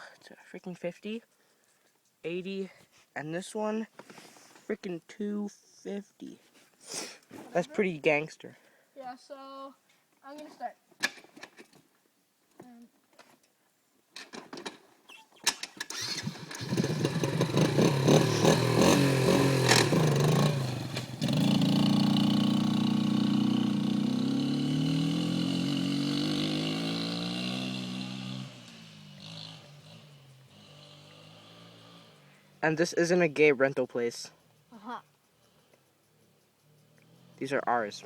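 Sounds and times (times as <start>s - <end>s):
engine starting clicks: 15.4s - 17.7s, 19.6s - 20.3s
atv engine running: 15.9s - 33.2s, 34.4s - 37.8s.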